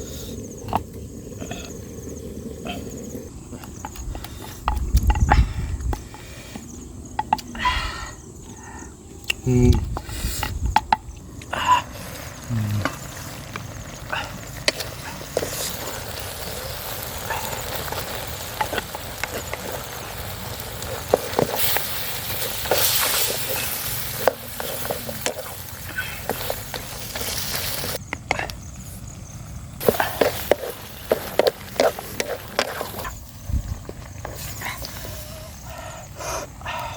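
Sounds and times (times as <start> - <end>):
food sizzling in a pan: 11.8 - 28.0, 29.8 - 35.7.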